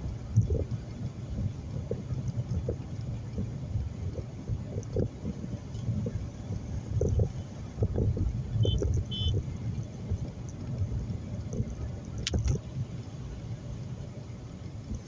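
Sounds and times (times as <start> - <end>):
car road and engine rumble: 0.0 - 15.0
short high beeps: 8.6 - 9.4.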